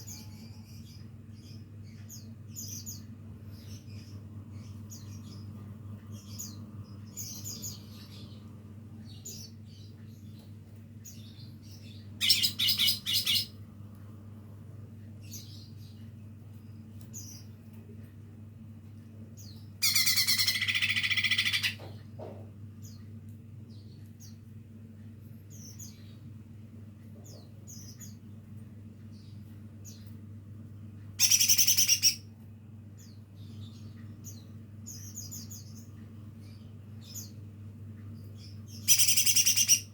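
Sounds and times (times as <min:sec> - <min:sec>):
bird chirping and twittering: 0:00.0 - 0:13.6, 0:15.2 - 0:17.6, 0:19.3 - 0:22.0, 0:25.5 - 0:26.3, 0:27.1 - 0:30.2, 0:31.0 - 0:32.3, 0:33.0 - 0:39.9
steady low hum: 0:00.0 - 0:39.9.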